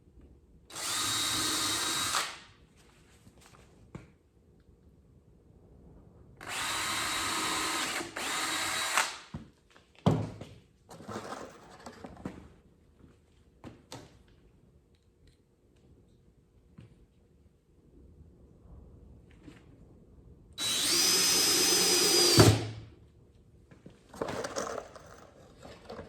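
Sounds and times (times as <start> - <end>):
cordless drill driving a screw: 0.7 - 2.4, 6.4 - 9.2, 20.6 - 22.8.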